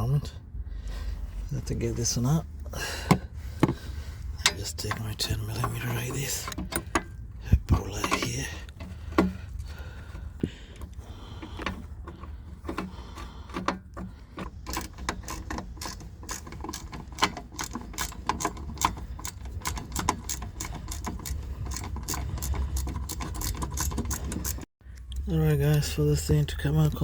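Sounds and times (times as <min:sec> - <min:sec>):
ratchet wrench clicking: 0:14.4 - 0:24.6.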